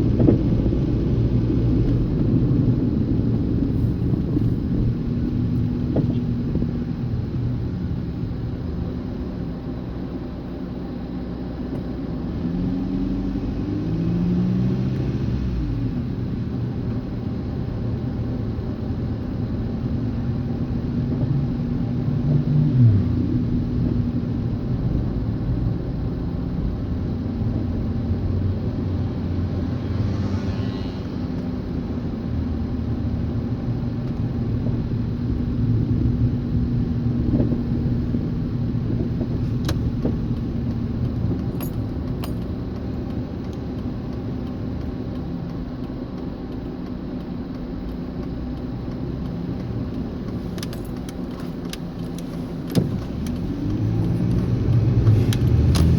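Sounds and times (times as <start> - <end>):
car road and engine noise: 0.0 - 55.9
car clunking: 48.6 - 55.9.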